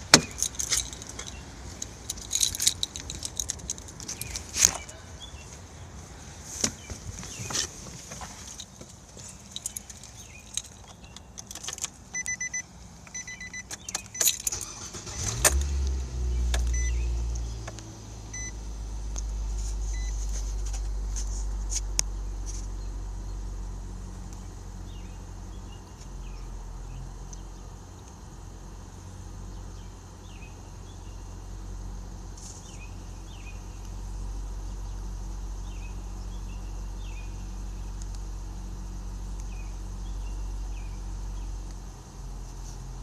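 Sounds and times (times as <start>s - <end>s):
keys jangling: 0.2s - 4.5s, 9.4s - 12.0s, 13.7s - 14.7s
car engine starting and idling: 9.6s - 43.0s
chime beeping: 12.2s - 12.6s, 13.2s - 14.4s.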